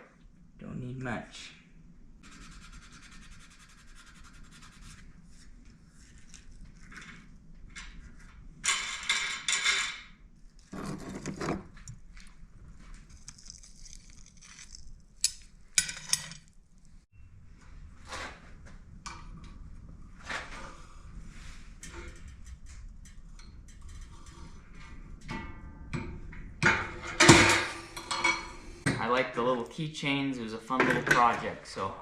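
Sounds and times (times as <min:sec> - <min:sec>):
scraping metal parts: 0:13.1 - 0:16.6, 0:21.8 - 0:28.9.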